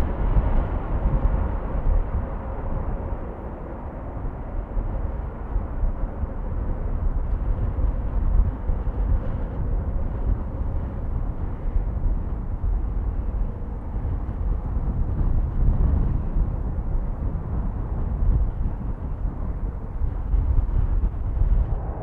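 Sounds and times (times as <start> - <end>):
faint engine whine: 0.0 - 22.0
jet engine rumble: 0.0 - 22.0
wind buffeting microphone: 0.0 - 22.0.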